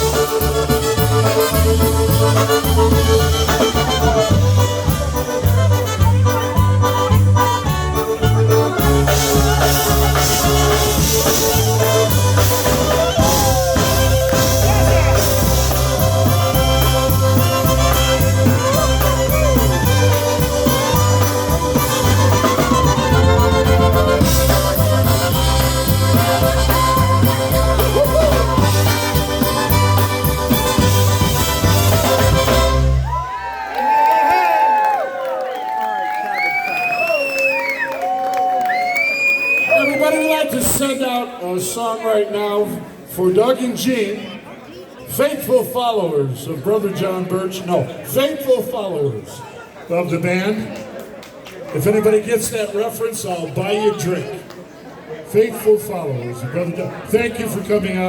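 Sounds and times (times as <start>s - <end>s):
polka band playing: 0.0s - 33.2s.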